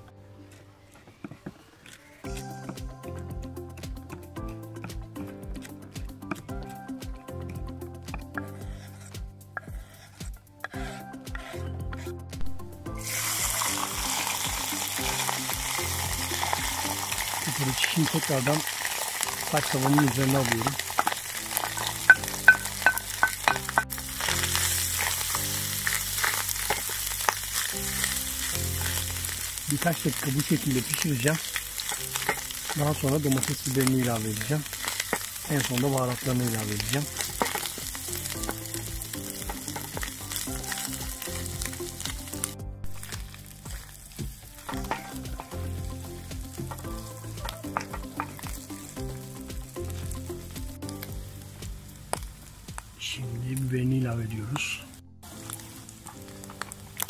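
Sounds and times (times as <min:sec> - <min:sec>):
meat sizzling on a pan: 0:00.9 - 0:07.2, 0:08.1 - 0:11.6, 0:12.4 - 0:57.0.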